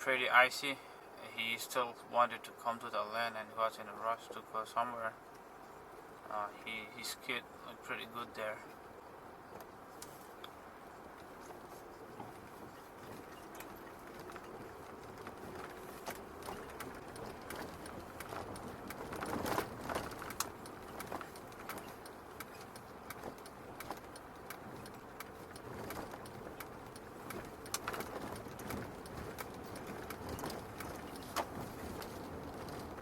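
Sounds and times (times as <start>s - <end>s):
car road noise: 0.0s - 33.0s
tyres crunching on snow and ice: 9.5s - 33.0s.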